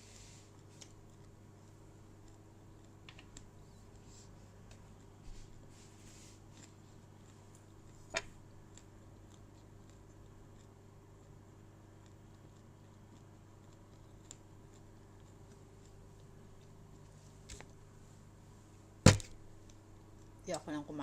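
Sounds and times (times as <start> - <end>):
low room hum: 0.0 - 21.0
crunchy chewing clicks: 0.6 - 3.7, 6.6 - 17.8.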